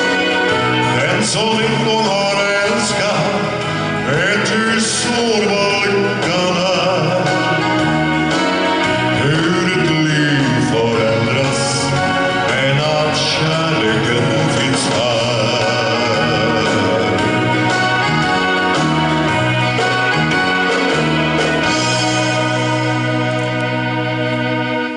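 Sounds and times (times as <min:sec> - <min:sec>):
electronic organ chords: 0:00.0 - 0:24.9
person singing with vibrato: 0:00.0 - 0:24.9.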